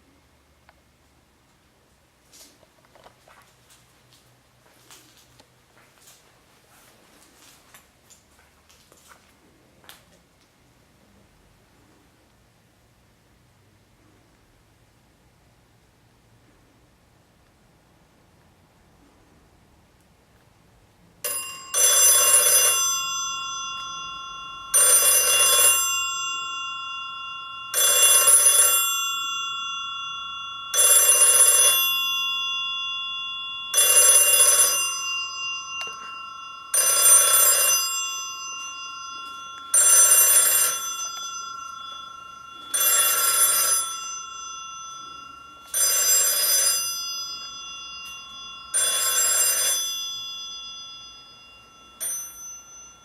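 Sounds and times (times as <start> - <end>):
steady bell tones: 21.2 - 53.0
telephone bell ringing: 21.2 - 53.0.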